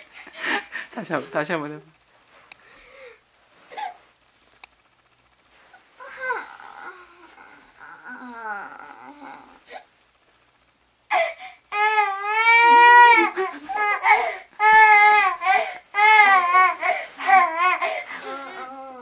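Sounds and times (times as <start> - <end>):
baby crying: 6.0 - 9.8, 11.1 - 19.0.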